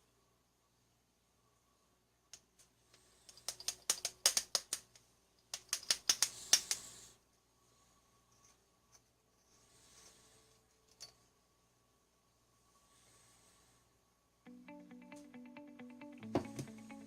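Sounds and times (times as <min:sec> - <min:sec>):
small hard parts clicking: 0:02.6 - 0:06.9.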